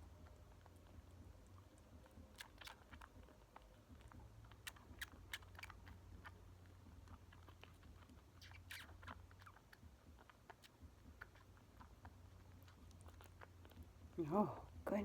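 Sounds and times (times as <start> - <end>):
kitten suckling wet clicks: 0.0 - 14.8
low steady hum: 0.0 - 15.0.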